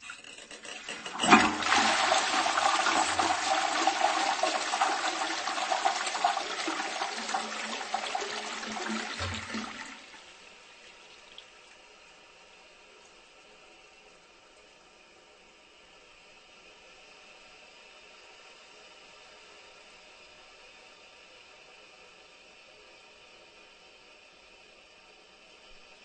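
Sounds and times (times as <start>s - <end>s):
toilet flushing: 0.0s - 12.0s.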